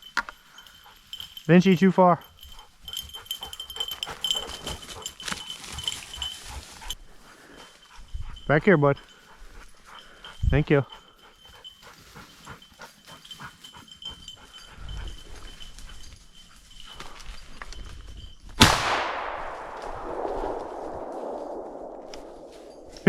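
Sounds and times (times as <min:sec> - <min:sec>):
twigs and leaves crackling underfoot: 0:04.2 - 0:07.8, 0:15.2 - 0:18.6, 0:19.5 - 0:23.0
shotgun shot with echo: 0:18.6 - 0:22.8.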